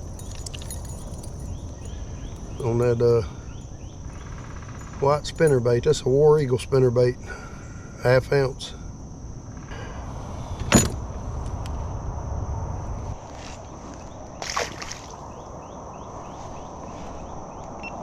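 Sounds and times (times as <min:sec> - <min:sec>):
low rumble: 0:09.4 - 0:14.4.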